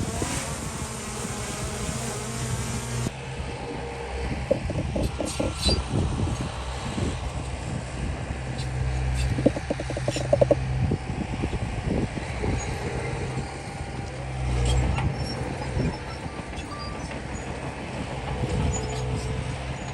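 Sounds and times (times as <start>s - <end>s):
heavy machinery diesel engine: 0.0s - 19.9s
rapid metallic clatter: 4.5s - 5.8s, 9.2s - 10.6s.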